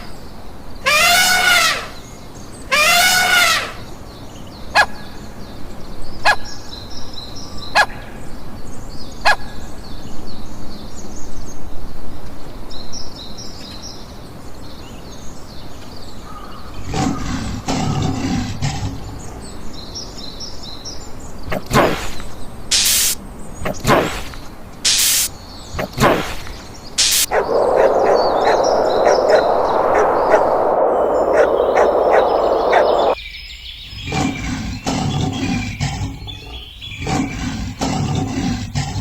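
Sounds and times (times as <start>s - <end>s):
small birds chirping: 14.7s - 39.0s
rough noisy burst: 27.0s - 33.2s.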